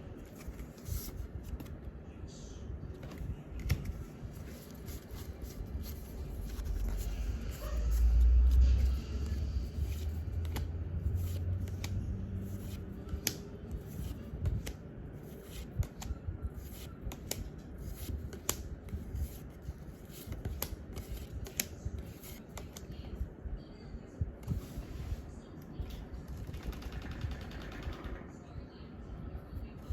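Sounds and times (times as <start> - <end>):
trading cards sliding and clicking: 3.0 - 22.9.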